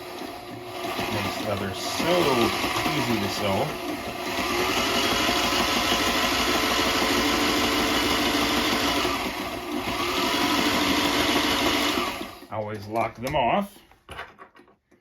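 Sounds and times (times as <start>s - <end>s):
sewing machine stitching: 0.0s - 12.5s.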